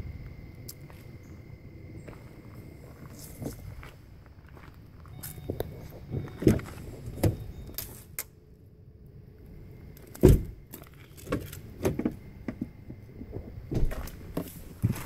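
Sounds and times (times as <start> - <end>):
knocks and thuds on a car: 10.2 - 10.6.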